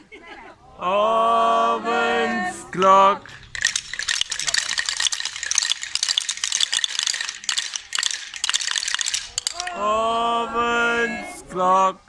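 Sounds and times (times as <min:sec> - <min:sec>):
group chanting in unison: 0:00.6 - 0:03.3, 0:09.6 - 0:12.0
wooden clappers rattling: 0:02.7 - 0:09.9.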